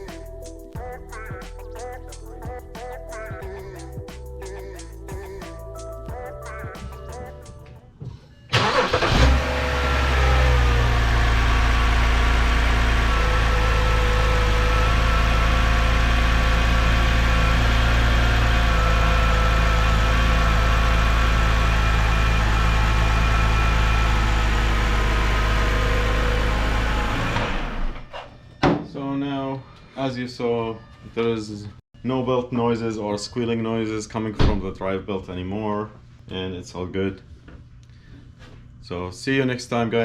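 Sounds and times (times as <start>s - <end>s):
car engine starting and idling: 8.5s - 28.1s.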